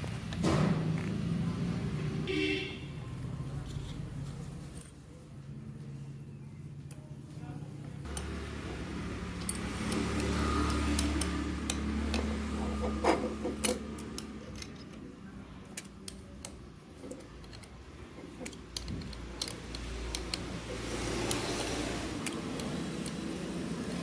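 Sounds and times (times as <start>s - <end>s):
metal tools clicking and clinking: 9.1s - 23.4s.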